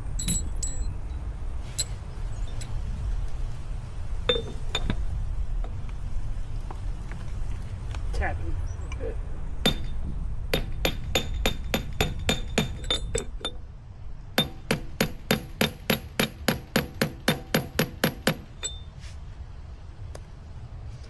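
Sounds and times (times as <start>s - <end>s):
hammer tapping metal tool: 9.7s - 10.0s.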